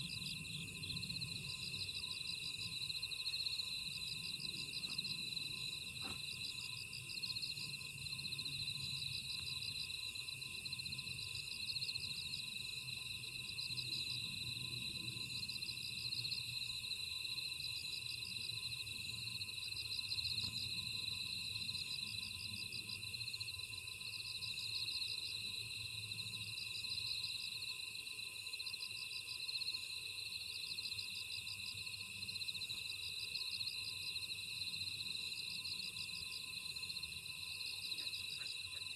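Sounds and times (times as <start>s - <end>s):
insects trilling: 0.0s - 38.9s
insect pulsed chirps: 33.5s - 38.9s.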